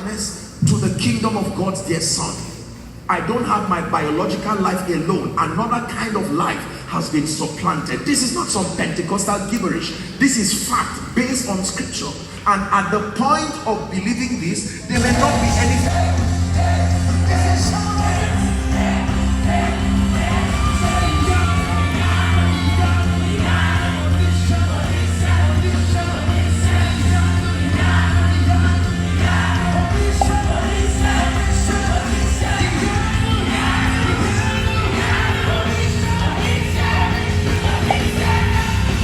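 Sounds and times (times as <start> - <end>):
worship music with singing: 14.7 - 39.0
people shouting and whooping: 15.0 - 25.5.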